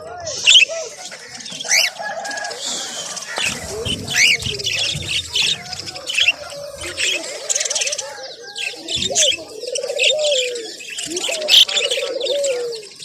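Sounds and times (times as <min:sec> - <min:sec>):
birds chirping and chattering: 0:00.0 - 0:13.0
bird cooing warble: 0:00.5 - 0:13.0.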